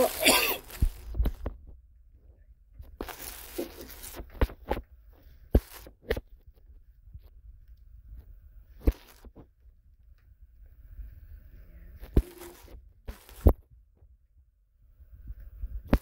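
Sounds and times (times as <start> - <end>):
plastic packaging rustling: 0.0 - 1.7, 2.8 - 6.6, 8.8 - 9.5, 12.0 - 13.6.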